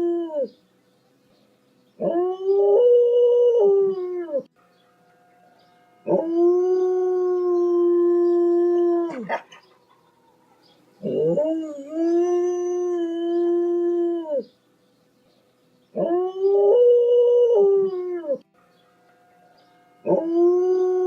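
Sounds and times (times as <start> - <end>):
dog howling: 6.0 - 14.5, 20.0 - 21.0.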